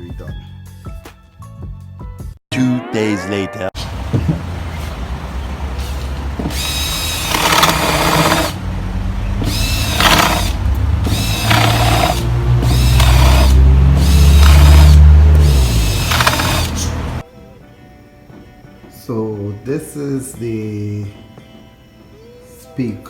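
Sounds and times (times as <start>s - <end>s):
heavy bass line: 8.0s - 17.2s
person singing: 22.1s - 23.0s.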